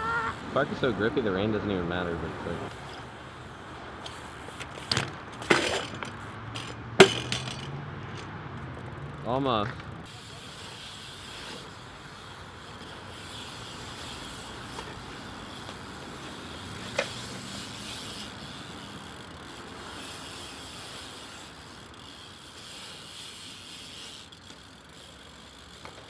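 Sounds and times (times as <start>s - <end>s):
bike tyre hiss on concrete: 0.0s - 1.1s, 1.9s - 6.5s, 10.0s - 26.0s
sharp clack: 4.9s - 8.3s.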